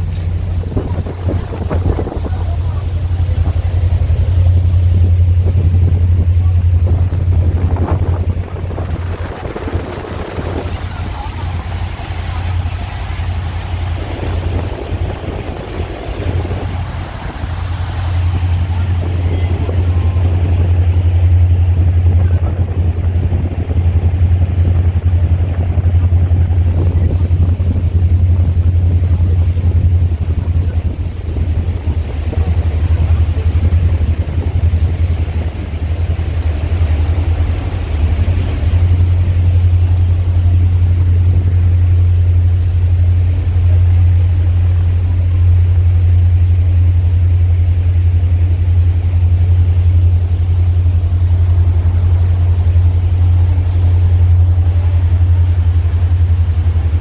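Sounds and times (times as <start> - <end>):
wind noise: 0.0 - 45.4
boat engine rumble: 0.0 - 57.0
water rushing: 0.0 - 57.0.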